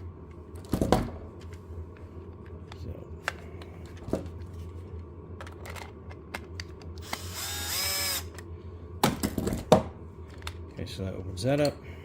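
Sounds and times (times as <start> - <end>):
cordless screwdriver motor whining: 7.0 - 8.4.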